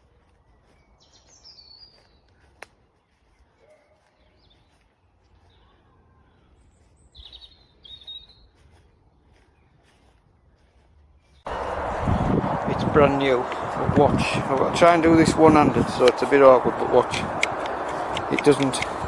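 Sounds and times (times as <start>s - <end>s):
birds chirping: 0.0s - 19.0s
low rumble: 11.5s - 15.8s.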